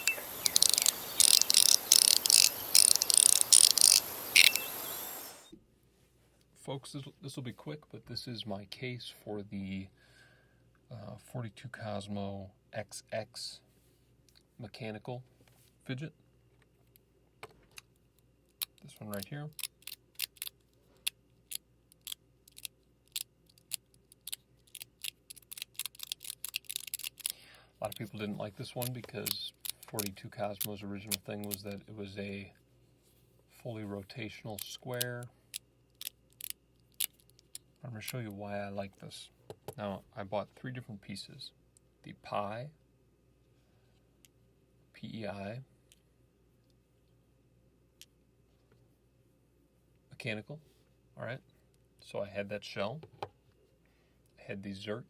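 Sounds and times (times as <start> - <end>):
fidget slider clicking: 0.0 - 4.8, 22.0 - 27.3.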